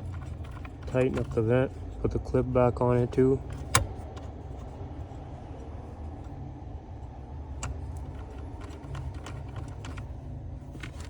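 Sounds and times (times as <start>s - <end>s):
small parts clicking: 0.0s - 1.5s, 7.6s - 11.0s
steady low hum: 0.0s - 11.0s.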